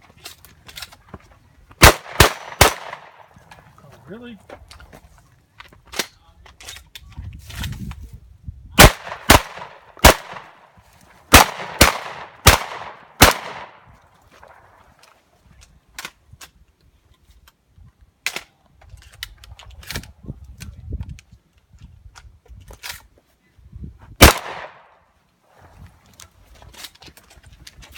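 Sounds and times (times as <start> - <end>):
shotgun shots with echo: 1.8 - 3.3, 8.8 - 10.6, 11.3 - 13.8, 24.2 - 24.9.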